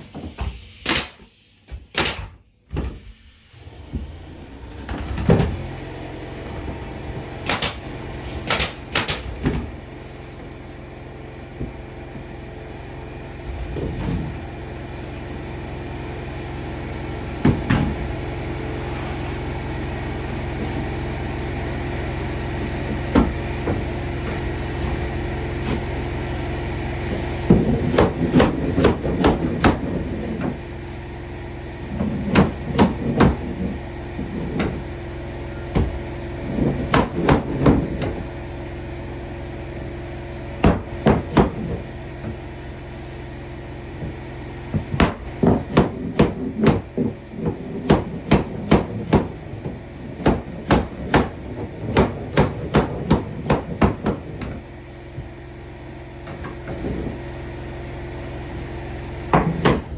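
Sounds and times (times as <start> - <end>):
steady low hum: 3.6 - 59.9
hammer striking wood: 8.4 - 9.3, 22.8 - 25.9, 27.1 - 30.6, 32.0 - 34.9, 35.6 - 38.3, 40.6 - 42.4, 44.0 - 55.3, 59.3 - 59.9.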